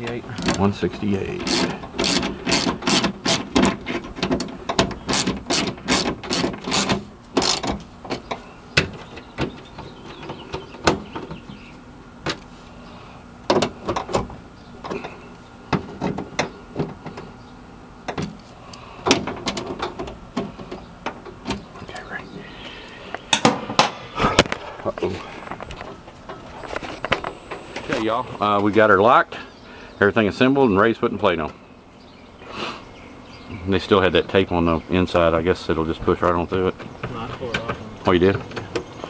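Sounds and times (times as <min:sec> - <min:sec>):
ratchet clicking: 0:00.4 - 0:00.6, 0:01.4 - 0:03.8, 0:05.1 - 0:07.7.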